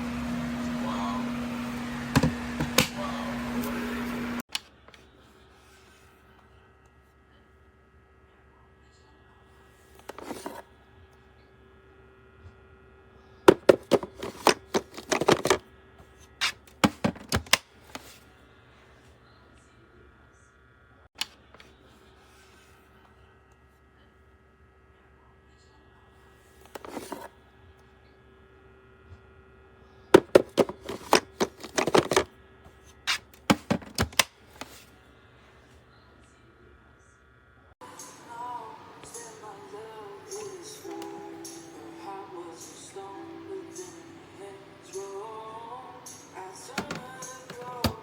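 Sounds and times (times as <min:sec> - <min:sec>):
faint steady hum: 0:00.0 - 0:48.0
objects knocking and clattering: 0:13.5 - 0:15.6, 0:16.7 - 0:18.0, 0:30.2 - 0:32.3, 0:33.4 - 0:34.8, 0:46.8 - 0:48.0
clicks and knocks: 0:30.2 - 0:32.3, 0:46.7 - 0:48.0.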